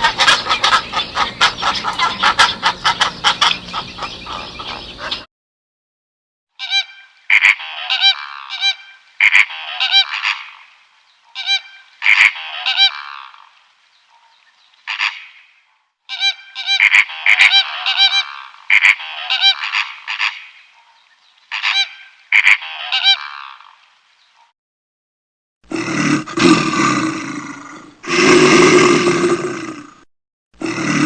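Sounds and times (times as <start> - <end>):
geese honking: 0.0 - 5.3, 6.6 - 10.7, 11.3 - 13.4, 14.9 - 15.5, 16.1 - 20.8, 21.5 - 23.7.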